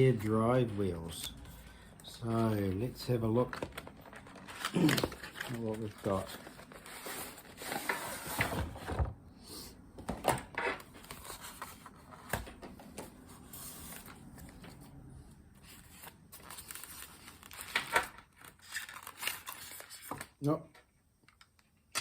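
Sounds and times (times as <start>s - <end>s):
packaging rustling and crinkling: 3.1s - 9.0s, 15.6s - 20.5s.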